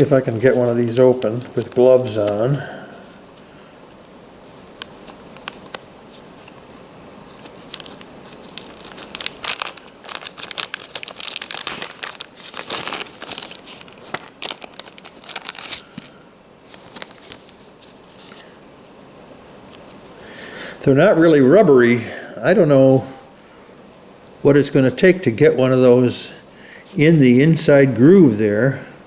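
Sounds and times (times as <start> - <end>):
plastic packaging crinkling and tearing: 0.0 - 2.5, 4.8 - 6.6, 7.3 - 16.0, 16.6 - 18.5.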